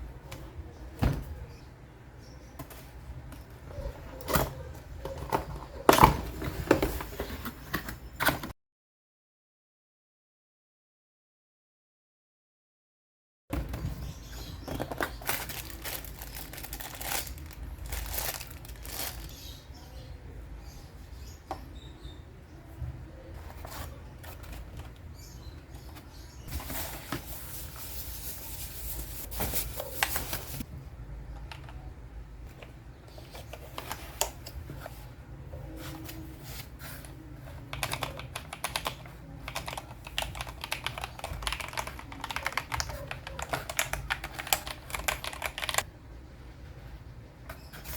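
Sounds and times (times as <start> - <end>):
rustling: 15.0 - 19.4
mechanical keyboard clicking: 37.7 - 45.8.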